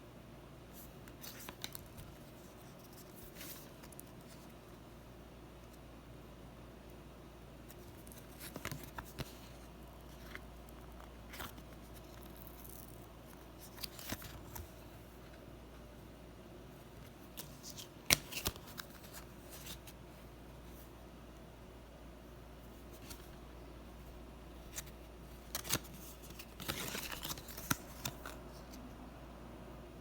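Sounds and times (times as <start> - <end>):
trading cards rustling: 7.7 - 15.0, 17.3 - 20.0, 24.6 - 28.6.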